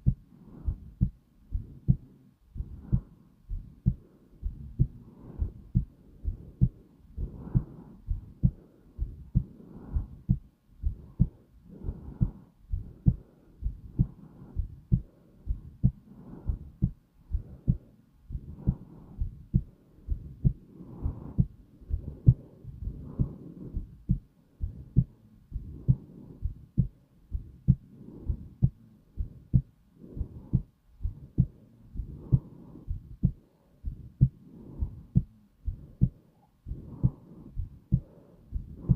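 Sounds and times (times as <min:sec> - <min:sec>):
heartbeat thumping: 0:00.0 - 0:38.9.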